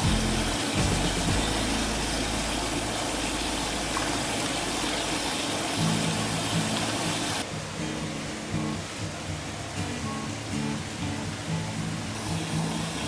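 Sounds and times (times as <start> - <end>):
background music: 0.0 - 4.3
low hum: 0.0 - 7.4
rushing water: 0.0 - 13.0.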